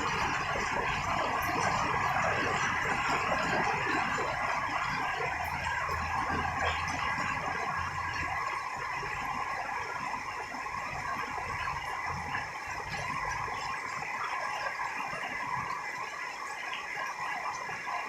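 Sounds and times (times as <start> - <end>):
rain falling: 0.0 - 18.0.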